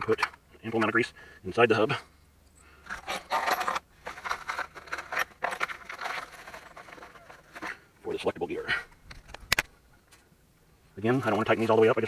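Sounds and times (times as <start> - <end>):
metal parts clinking and scraping: 2.8 - 7.9.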